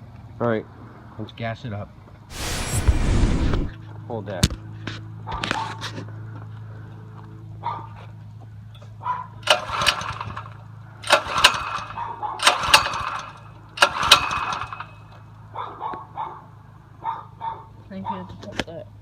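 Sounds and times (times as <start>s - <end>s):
steady low hum: 2.3s - 3.8s.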